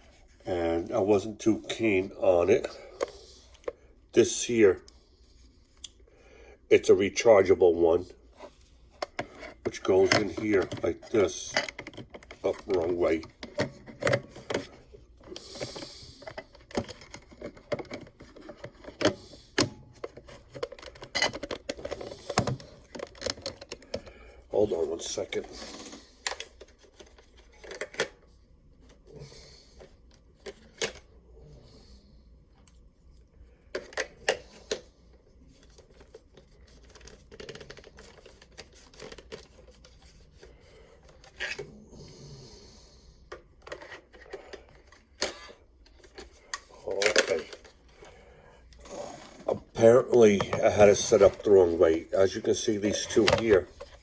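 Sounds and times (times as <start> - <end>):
plastic clicks and knocks: 16.2 - 24.1.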